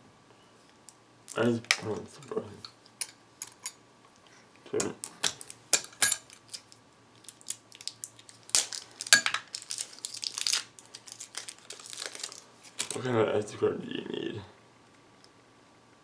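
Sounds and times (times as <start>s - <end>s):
packaging handling clicks and knocks: 4.8s - 13.0s
plastic packaging rustling: 5.0s - 13.0s.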